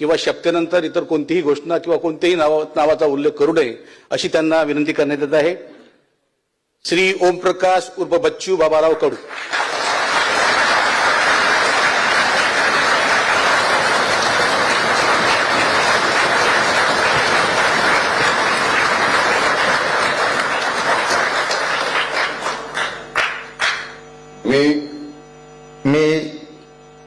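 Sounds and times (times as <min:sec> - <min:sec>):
crowd applause: 0:09.1 - 0:24.0.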